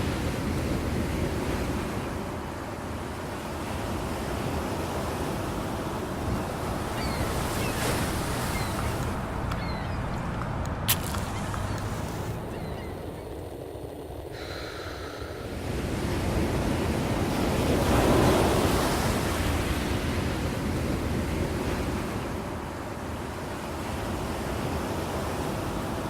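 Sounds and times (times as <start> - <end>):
ocean waves breaking: 0.0 - 26.0
bird call: 6.8 - 13.3.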